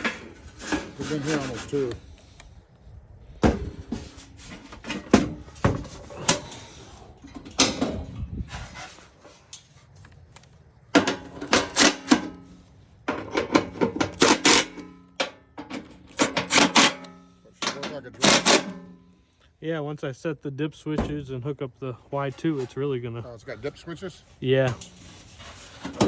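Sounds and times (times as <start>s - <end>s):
hand tools clicking and clattering: 0.0s - 2.1s, 3.5s - 19.1s, 24.6s - 26.0s.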